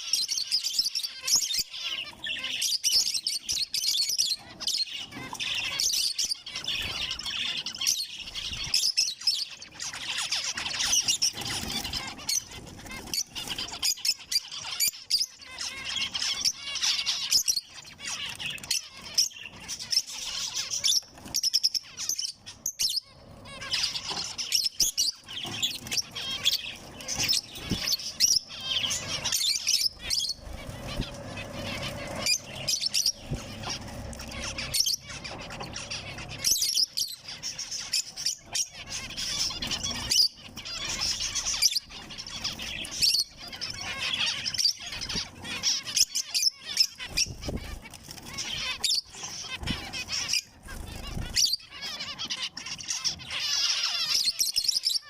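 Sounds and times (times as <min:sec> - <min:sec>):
finches chirping: 0:00.0 - 0:55.0.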